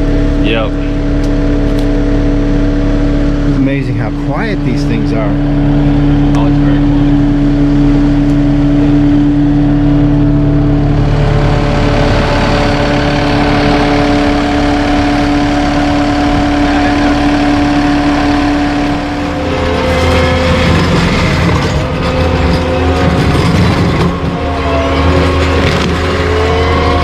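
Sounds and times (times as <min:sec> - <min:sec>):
rough high-pitched mulcher noise: 0:00.0 - 0:27.0
skid steer engine running: 0:00.0 - 0:27.0.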